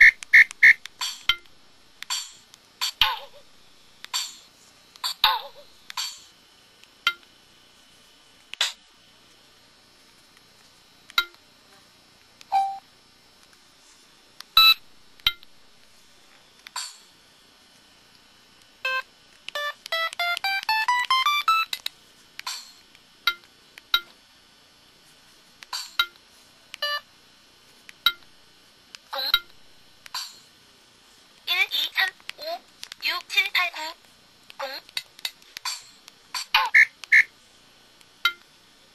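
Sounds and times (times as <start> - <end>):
short electronic beeps: 12.5 - 12.8.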